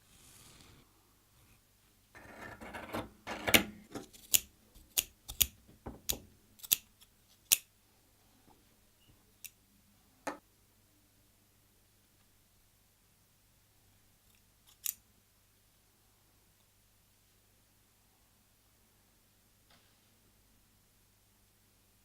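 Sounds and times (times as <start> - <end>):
scissors snipping: 4.1 - 7.7, 14.7 - 15.0.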